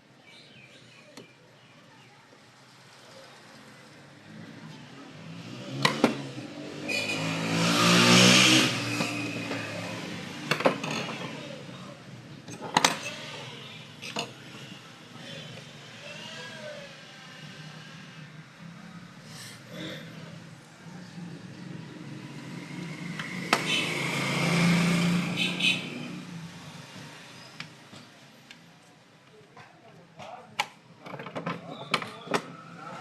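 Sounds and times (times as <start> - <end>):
motor vehicle passing by: 2.6 - 12.0, 14.4 - 27.6.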